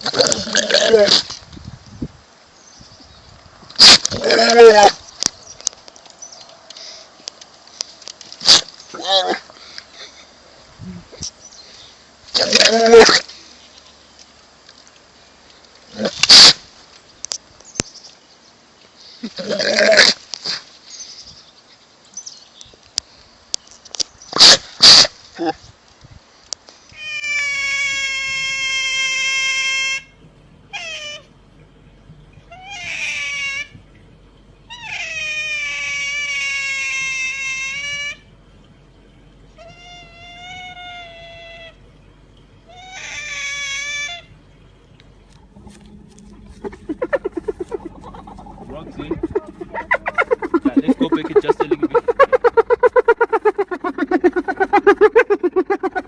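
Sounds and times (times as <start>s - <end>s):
animal high-pitched cries: 27.0s - 30.1s, 30.7s - 31.3s, 32.5s - 33.8s, 34.7s - 38.3s, 39.6s - 41.8s, 42.7s - 44.3s, 45.6s - 56.0s
long drawn-out falling tone: 28.0s - 56.0s.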